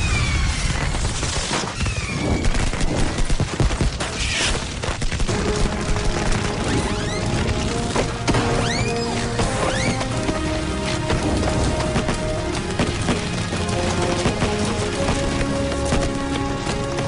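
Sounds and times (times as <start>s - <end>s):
firework whistles: 0.0s - 2.8s
fireworks crackling and popping: 0.0s - 17.0s
orchestral music: 5.3s - 17.0s.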